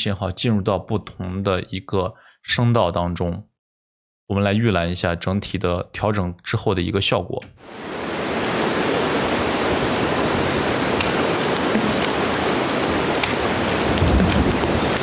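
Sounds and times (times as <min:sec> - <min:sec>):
heavy rain hiss: 0:07.6 - 0:15.0
rain drops ticking: 0:07.6 - 0:15.0.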